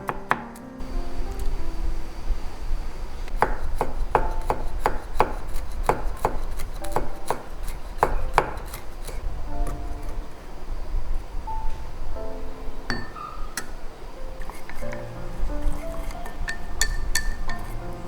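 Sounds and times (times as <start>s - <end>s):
steady low rumble: 0.8s - 3.4s, 9.2s - 12.9s
knife chopping on cutting board: 3.4s - 9.2s.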